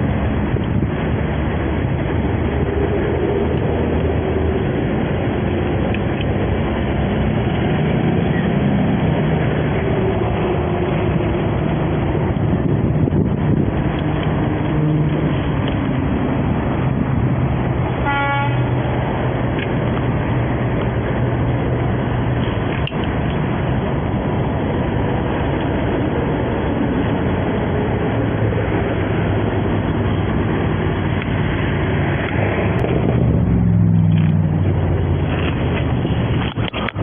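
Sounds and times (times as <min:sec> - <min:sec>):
road traffic hum: 0:00.0 - 0:37.0
vehicle passing: 0:00.0 - 0:37.0
car horn toot: 0:18.0 - 0:18.7.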